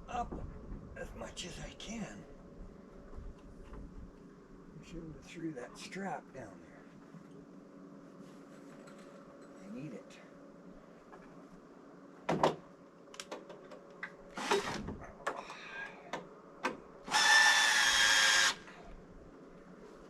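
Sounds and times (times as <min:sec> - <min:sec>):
power drill running: 0:14.4 - 0:14.8, 0:17.1 - 0:18.7.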